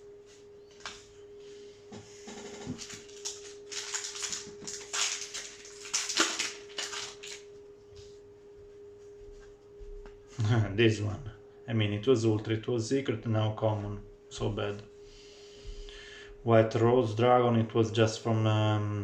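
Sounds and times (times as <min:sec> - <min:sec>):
faint steady hum: 0:00.0 - 0:19.0
cards and wrappers rustling: 0:02.7 - 0:07.5.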